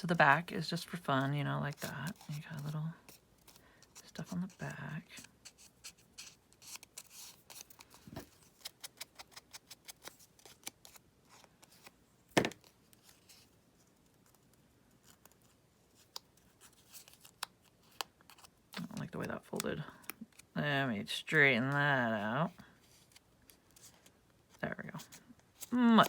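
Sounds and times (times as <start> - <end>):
paper and tape clicks and crinkles: 5.2 - 11.9, 12.6 - 20.5.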